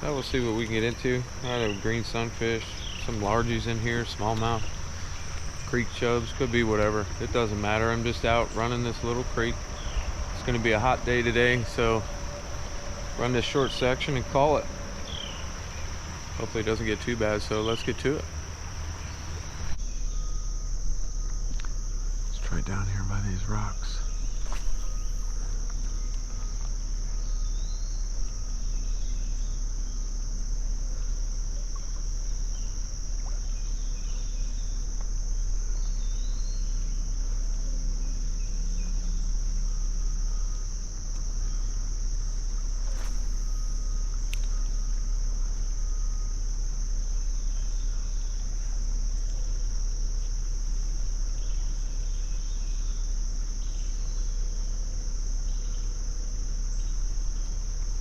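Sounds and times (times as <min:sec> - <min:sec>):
faint bird chirps: 0:00.0 - 0:30.0, 0:33.4 - 0:46.4
low rumble: 0:00.0 - 0:55.2
high-pitched insect chorus: 0:00.0 - 0:58.0.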